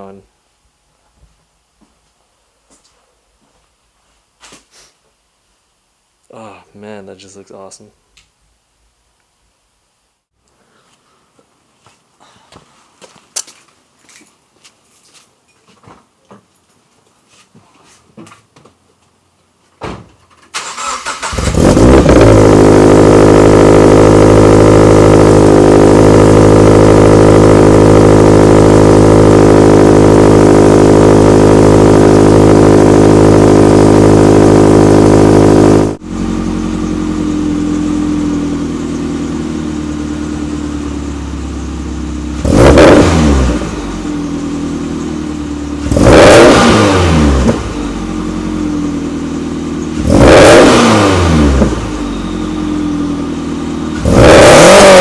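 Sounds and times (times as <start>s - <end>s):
car engine and exhaust: 20.6s - 55.0s.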